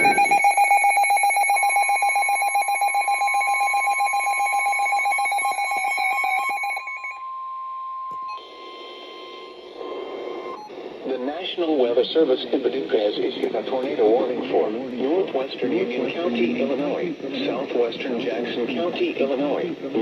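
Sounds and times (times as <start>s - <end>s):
rapid electronic alarm beeps: 0.0s - 7.4s, 8.2s - 11.1s
steady alarm tone: 0.0s - 11.8s.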